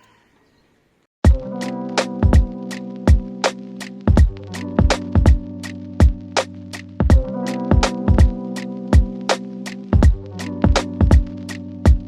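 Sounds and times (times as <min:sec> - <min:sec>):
electronic music with drum beat: 0:01.2 - 0:12.0.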